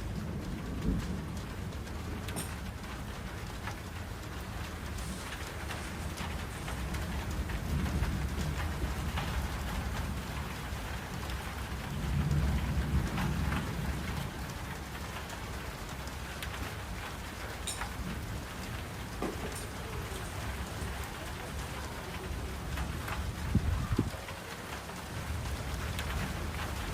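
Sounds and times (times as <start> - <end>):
rain falling: 0.0 - 26.9
drops pattering on surfaces: 2.2 - 8.5, 17.4 - 22.2.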